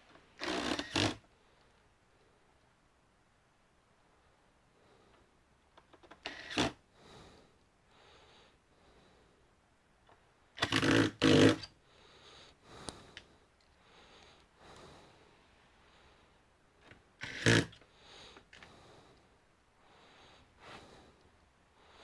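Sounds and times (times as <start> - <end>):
person breathing: 6.9 - 9.5, 11.8 - 16.5, 17.8 - 22.0
scraping on plastic casing: 10.6 - 11.7.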